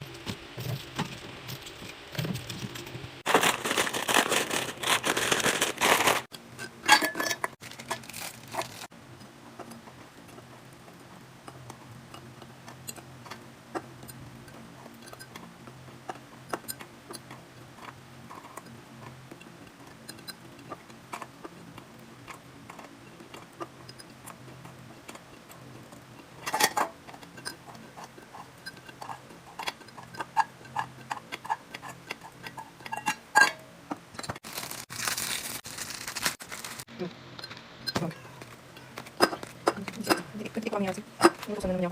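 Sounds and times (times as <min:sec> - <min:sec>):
packaging rustling: 0:00.7 - 0:06.3, 0:07.5 - 0:08.9, 0:34.4 - 0:36.9.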